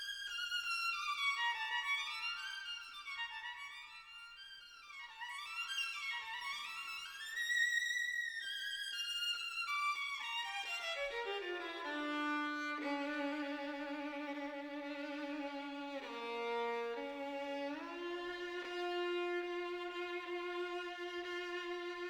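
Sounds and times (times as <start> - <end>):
slow string instrument melody: 0.0 - 22.0.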